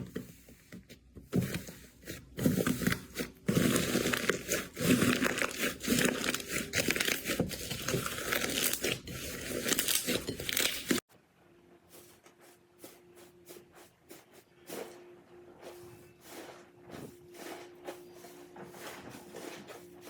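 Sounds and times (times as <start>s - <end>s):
slime crackling: 3.6s - 11.0s.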